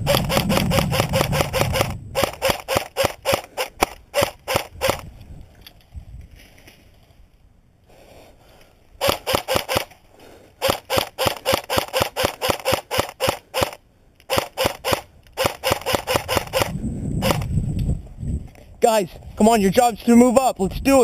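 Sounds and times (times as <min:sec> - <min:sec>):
airsoft gun rapid shots: 0:00.0 - 0:05.0, 0:09.0 - 0:09.9, 0:10.6 - 0:17.5.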